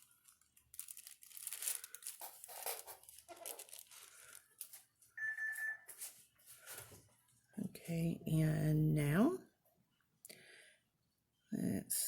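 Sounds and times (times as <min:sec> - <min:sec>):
rustling and crinkling handling noise: 0:00.0 - 0:08.0.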